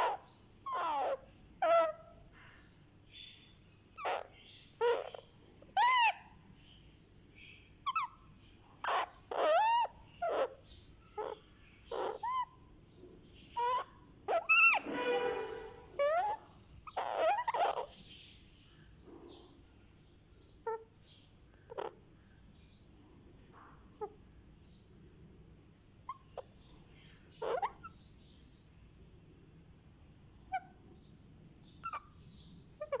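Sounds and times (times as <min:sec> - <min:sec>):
parakeet chick squeaky chirps: 0:00.0 - 0:02.2, 0:04.0 - 0:06.2, 0:07.8 - 0:18.3, 0:20.4 - 0:22.0, 0:26.0 - 0:28.5, 0:30.5 - 0:33.0.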